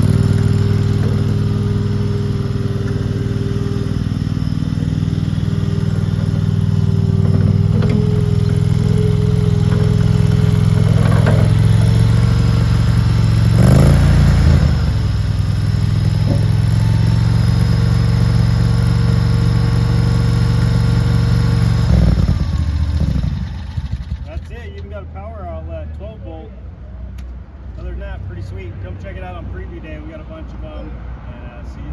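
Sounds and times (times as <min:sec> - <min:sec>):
skid steer loader engine running: 0:00.0 - 0:24.9.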